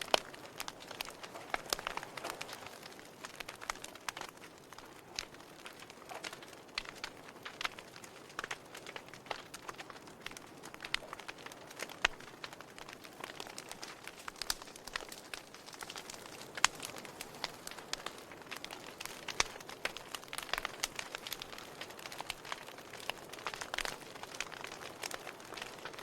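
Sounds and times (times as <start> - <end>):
wood fire crackling and popping: 0.0 - 26.0.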